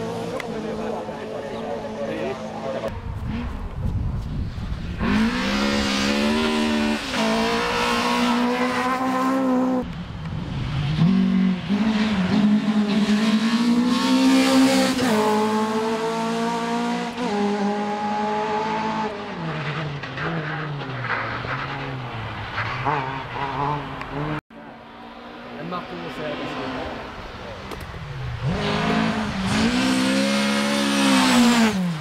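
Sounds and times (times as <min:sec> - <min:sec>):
car engine revving hard: 0:05.0 - 0:09.8, 0:11.0 - 0:19.9, 0:28.4 - 0:32.0.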